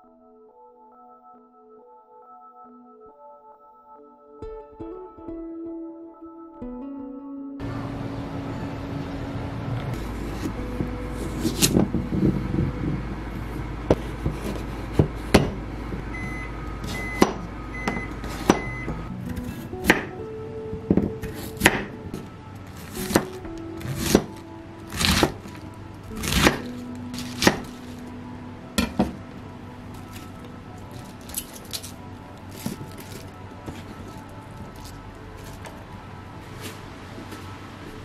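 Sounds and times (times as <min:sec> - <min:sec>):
soft background music: 0:00.0 - 0:38.0
appliance beeps: 0:07.6 - 0:14.0, 0:16.0 - 0:19.1
kitchen appliance humming: 0:07.6 - 0:20.1, 0:20.9 - 0:38.0
knocks and clunks of kitchen work: 0:09.9 - 0:20.2, 0:28.8 - 0:29.3.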